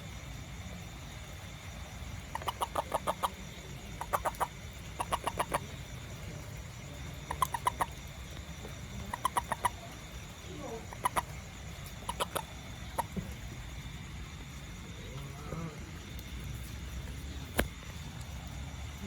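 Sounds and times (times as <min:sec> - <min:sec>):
animal clucking calls: 0:02.2 - 0:13.7.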